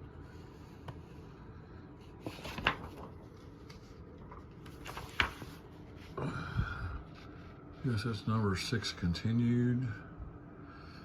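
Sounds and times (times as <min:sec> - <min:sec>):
booklet pages turning: 0:02.0 - 0:06.2
paper crackling: 0:02.0 - 0:06.2.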